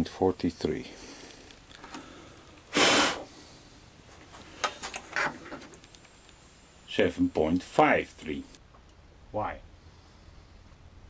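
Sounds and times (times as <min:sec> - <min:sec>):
man exhaling forcefully: 0:02.0 - 0:03.4.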